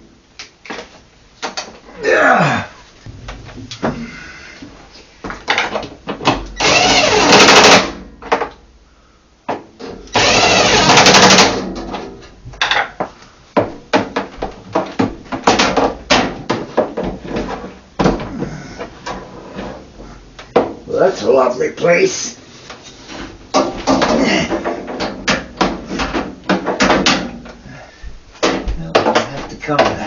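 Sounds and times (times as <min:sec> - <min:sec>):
cordless power driver running: 0:06.6 - 0:07.9, 0:10.1 - 0:11.5.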